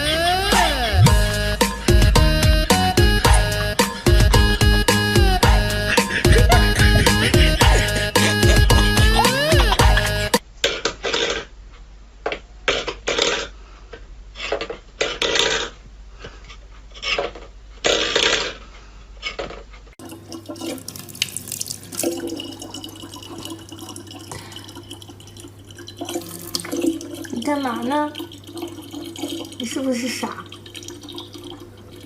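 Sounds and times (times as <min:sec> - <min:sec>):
low hum: 0:00.0 - 0:10.4
running water: 0:20.0 - 0:32.0
water splashing: 0:20.0 - 0:32.0.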